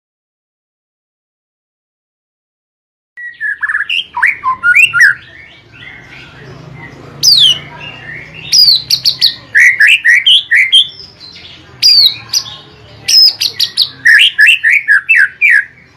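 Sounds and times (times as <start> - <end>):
bird singing: 3.2 - 15.9.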